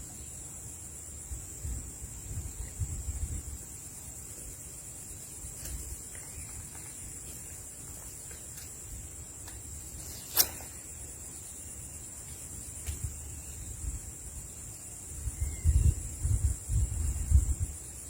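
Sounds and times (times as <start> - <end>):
insects chirring: 0.0 - 18.0
sharp click: 8.5 - 10.9, 12.8 - 13.2.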